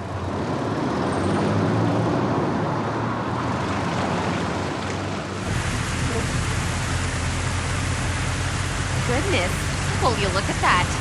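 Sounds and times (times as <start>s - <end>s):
car driving on wet road: 3.1s - 11.0s
even hiss like rain: 5.4s - 11.0s.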